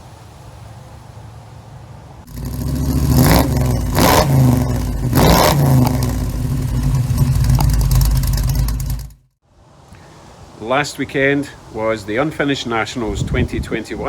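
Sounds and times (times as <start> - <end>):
car engine revving and idling: 2.3 - 9.2.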